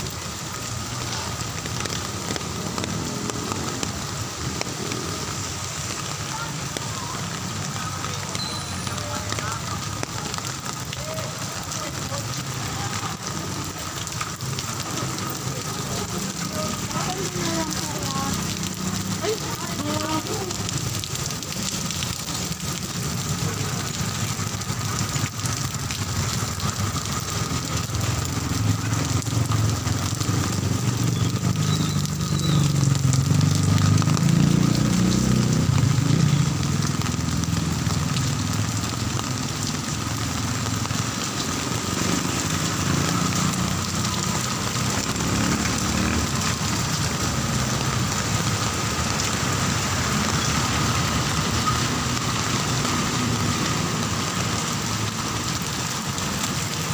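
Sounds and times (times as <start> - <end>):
heavy rain falling: 0.0 - 56.9
vehicle engine passing: 11.6 - 39.3, 39.9 - 56.7.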